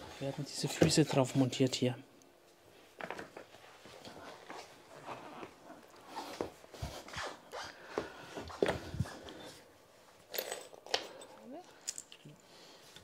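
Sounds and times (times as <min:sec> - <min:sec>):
light clicks and knocks of parts: 0:10.3 - 0:13.0.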